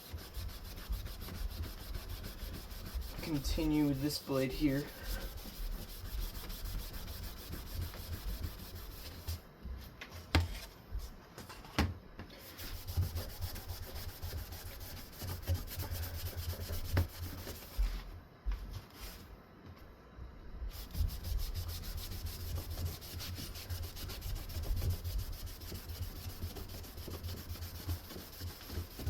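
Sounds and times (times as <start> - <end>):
wipe rubbing on fan blade: 0.0 - 9.4, 12.5 - 18.0, 20.7 - 29.0.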